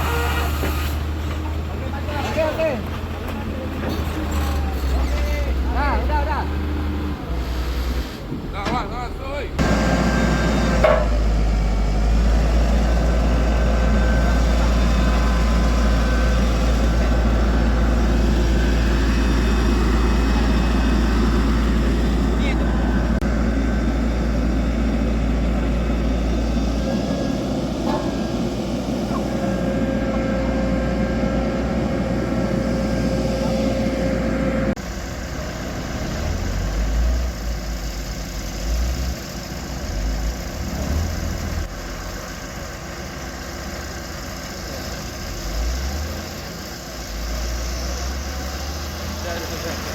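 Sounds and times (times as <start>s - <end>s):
heavy diesel machinery running: 0.0s - 49.9s
low engine rumble: 0.0s - 49.9s.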